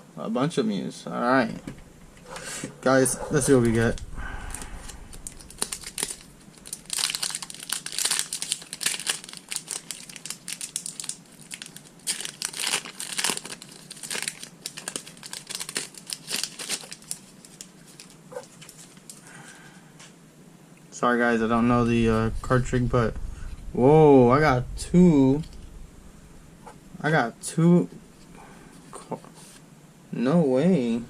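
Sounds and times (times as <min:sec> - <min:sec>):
foil wrapper crinkling and tearing: 0:03.4 - 0:19.3.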